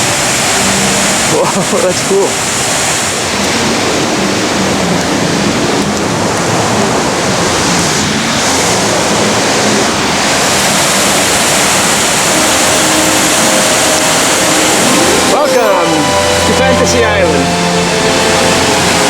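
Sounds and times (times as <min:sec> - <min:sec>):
rushing water roar: 0:00.0 - 0:19.0.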